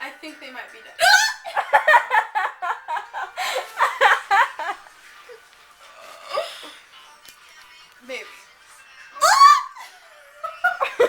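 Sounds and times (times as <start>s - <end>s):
person laughing and giggling: 1.4s - 4.8s, 9.8s - 11.0s.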